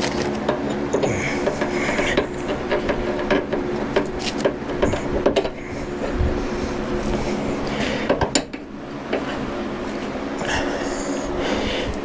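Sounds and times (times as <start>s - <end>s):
metal handles scraping and clicking: 0.0s - 10.2s
steady hum: 0.0s - 12.0s.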